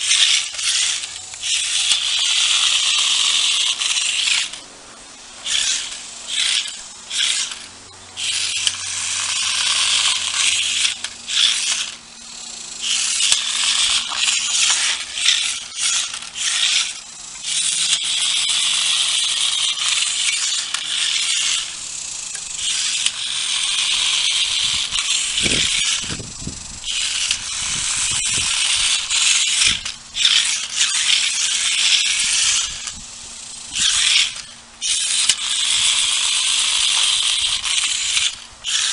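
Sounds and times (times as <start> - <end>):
toy car motors whirring: 0.0 - 38.9
plastic wheels rattling: 12.8 - 33.0.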